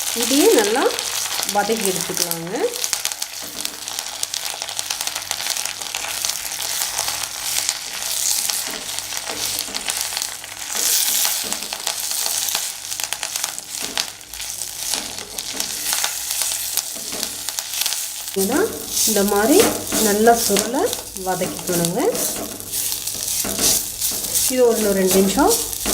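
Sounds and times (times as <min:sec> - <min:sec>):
leaves sizzling in oil: 0:00.0 - 0:25.9
spoon scraping pan: 0:13.5 - 0:25.9.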